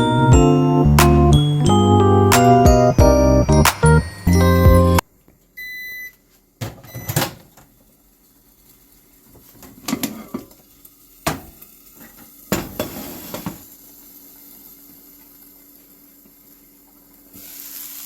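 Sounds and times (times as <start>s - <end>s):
microwave oven beep: 5.6s - 6.2s, 6.8s - 7.4s.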